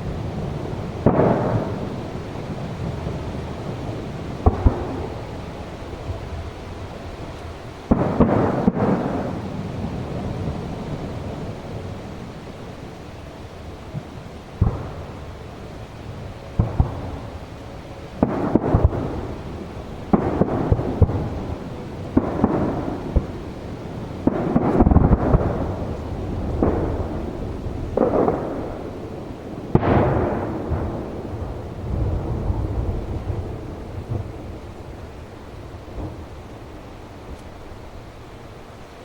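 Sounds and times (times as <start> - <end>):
firework shells bursting: 7.2 - 10.0, 13.9 - 29.0.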